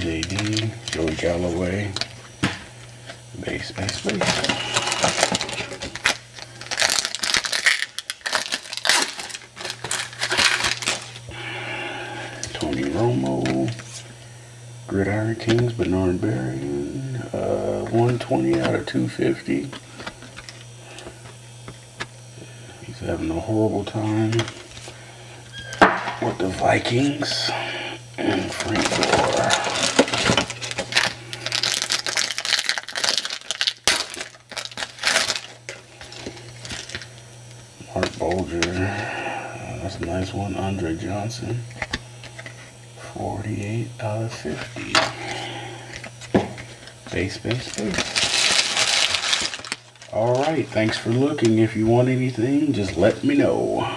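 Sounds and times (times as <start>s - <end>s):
wrapper crinkling and rustling: 0.0s - 2.2s, 3.5s - 11.3s, 28.2s - 37.2s, 45.9s - 52.1s
faint electrical hum: 0.0s - 53.9s.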